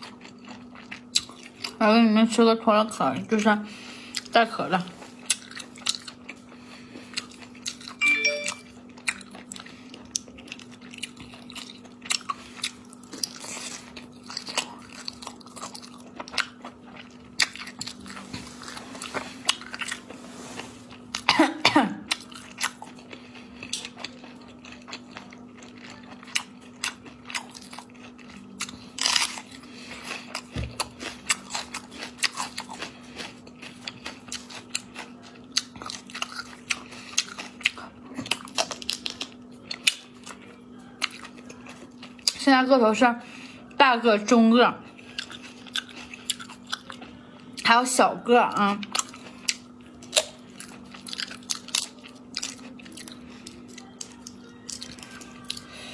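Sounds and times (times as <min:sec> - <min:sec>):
person coughing: 0:21.2 - 0:22.1
snails crunched and chewed: 0:22.1 - 0:40.4, 0:48.8 - 0:55.8.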